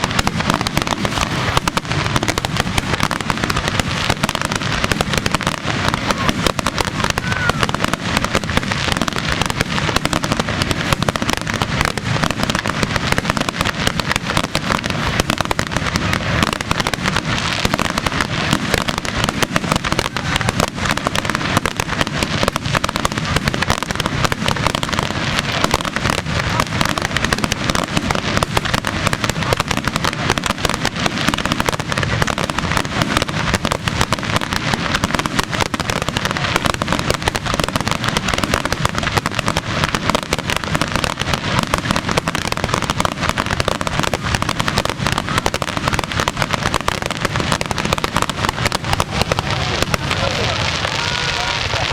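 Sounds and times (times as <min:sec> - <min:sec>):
fireworks bangs and crackles: 0:00.0 - 0:51.9.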